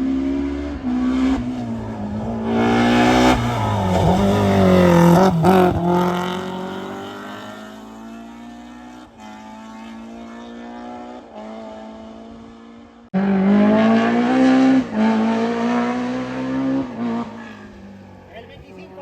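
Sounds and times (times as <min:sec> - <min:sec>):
car engine accelerating: 0:00.0 - 0:19.0.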